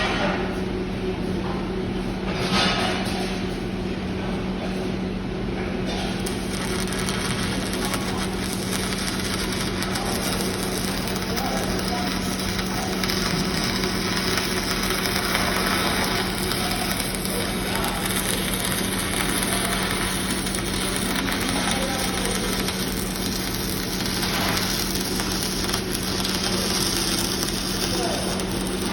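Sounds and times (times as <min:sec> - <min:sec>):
welding machine hum: 0:03.1 - 0:28.9
welding arc crackling: 0:05.8 - 0:28.9.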